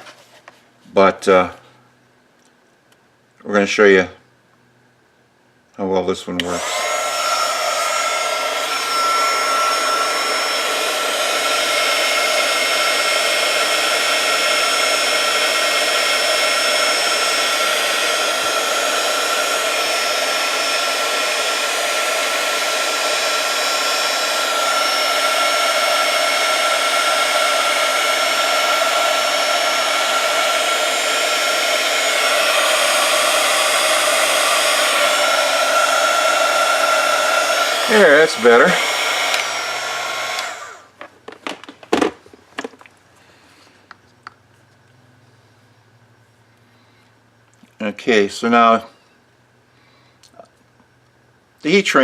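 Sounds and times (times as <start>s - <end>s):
heat gun blowing with whine: 6.4s - 42.8s.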